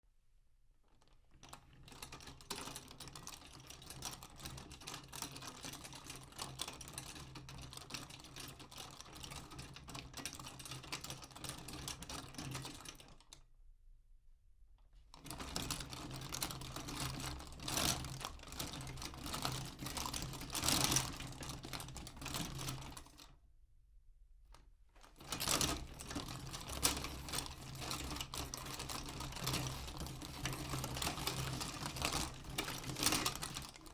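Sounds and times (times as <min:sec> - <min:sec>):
utility cart rolling and rattling: 0:25.2 - 0:33.9.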